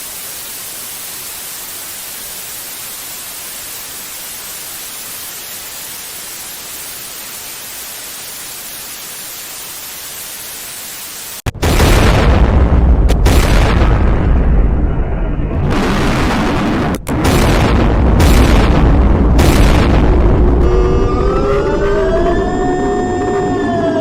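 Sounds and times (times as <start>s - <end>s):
white noise static hiss: 0.0s - 11.5s
deep noisy burst: 11.5s - 24.0s.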